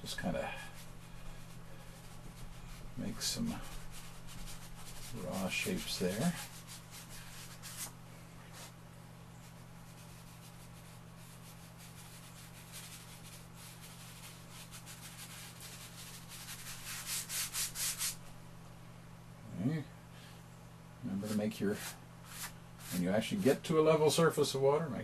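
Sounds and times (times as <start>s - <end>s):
steady low hum: 0.0s - 25.0s
chalk scratching on paper: 0.4s - 7.9s, 8.5s - 8.7s, 9.8s - 18.2s, 21.2s - 23.6s.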